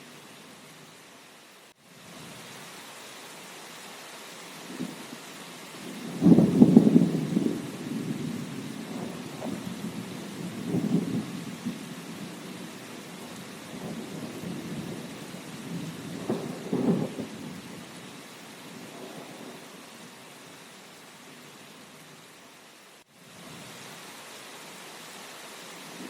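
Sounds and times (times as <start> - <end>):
steady rain: 0.0 - 26.0
thunder rumbling: 5.7 - 19.8.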